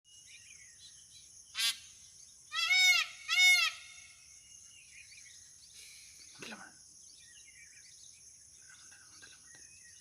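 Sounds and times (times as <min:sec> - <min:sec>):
insects chirping: 0:00.1 - 0:10.0
peacock calling: 0:01.5 - 0:01.9, 0:02.5 - 0:04.3.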